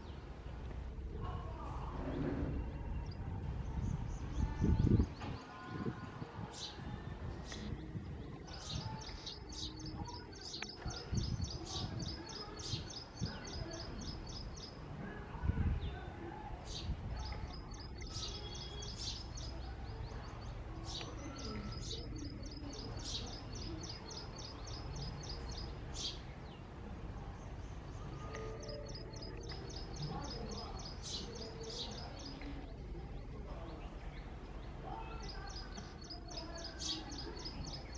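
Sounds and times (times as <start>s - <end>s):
sparrow chirping: 7.4s - 14.9s, 16.6s - 37.9s.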